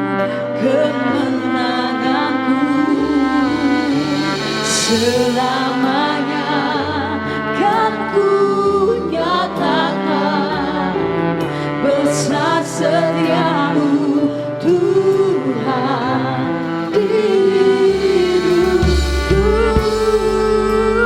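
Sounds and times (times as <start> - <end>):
worship band playing slow song: 0.0 - 21.0
person singing wavering held notes: 16.8 - 21.0
low bass: 17.0 - 21.0.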